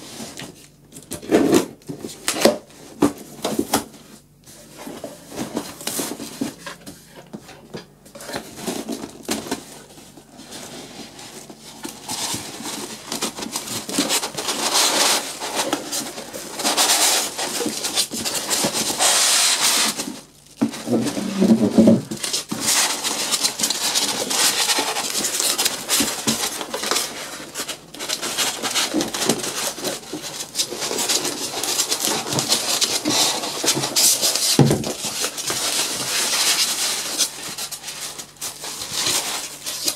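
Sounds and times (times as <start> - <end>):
packaging rustling: 8.2 - 39.9.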